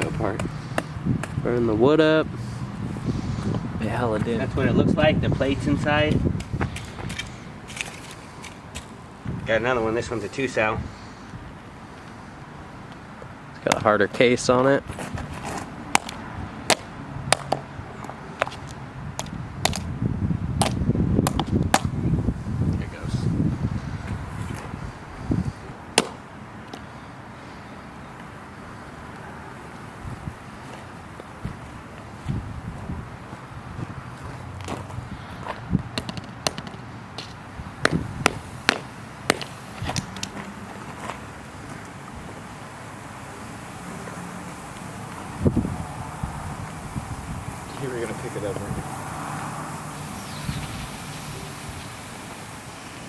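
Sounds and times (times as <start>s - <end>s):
sharp pops: 15.0s - 17.7s, 20.6s - 22.0s, 25.9s - 26.8s, 35.9s - 42.4s
battery burning and crackling: 37.8s - 53.0s.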